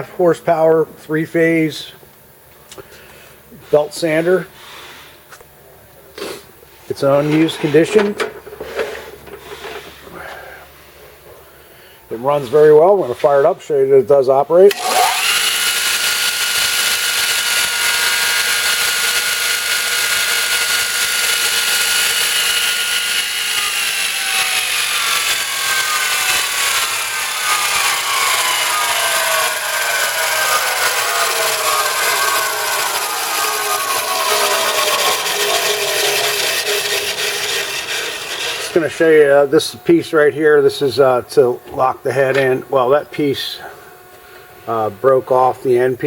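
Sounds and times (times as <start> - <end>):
belt sander whining: 14.6 - 42.0
sanding belt hissing: 15.0 - 39.0.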